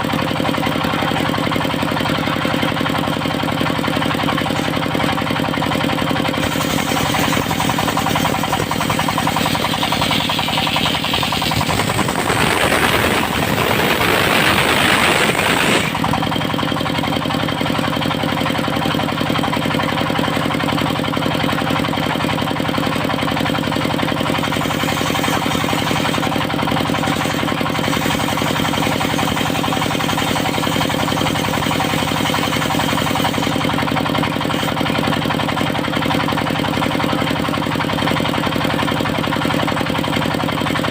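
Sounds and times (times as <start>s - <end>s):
sawmill engine running: 0.0s - 40.9s
saw blade cutting wood: 0.8s - 17.6s, 23.1s - 36.2s.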